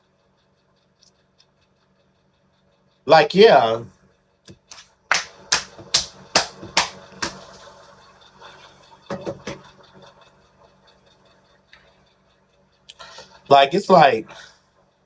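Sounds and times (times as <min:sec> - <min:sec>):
sharp taps: 0:04.5 - 0:07.5.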